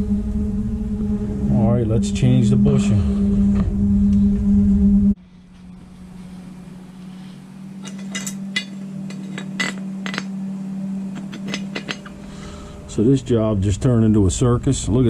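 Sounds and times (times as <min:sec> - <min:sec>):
low hum: 0:00.0 - 0:15.0
metal tools clinking: 0:07.8 - 0:10.4, 0:11.1 - 0:12.3.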